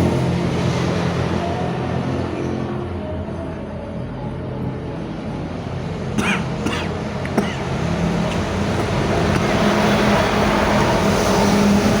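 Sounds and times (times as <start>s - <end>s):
vehicle engine running: 5.6s - 12.0s.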